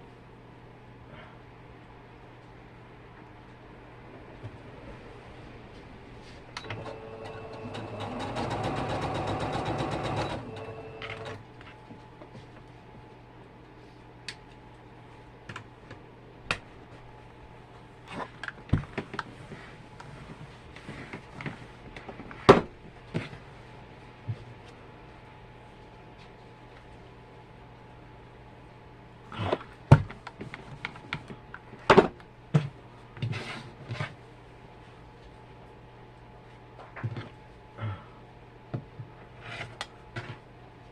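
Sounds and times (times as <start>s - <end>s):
sewing machine stitching: 6.6s - 11.4s.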